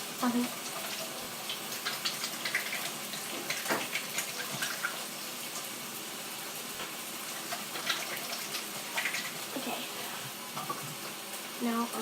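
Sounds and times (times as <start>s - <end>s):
tap running into sink: 1.9s - 5.0s.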